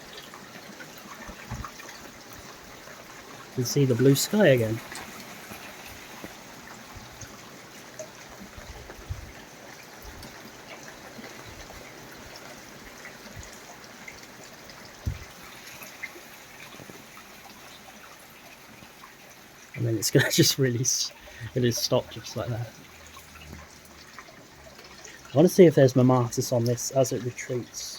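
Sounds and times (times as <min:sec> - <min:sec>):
rainwater trickling and dripping: 0:00.0 - 0:27.9
low thumps: 0:15.0 - 0:15.3.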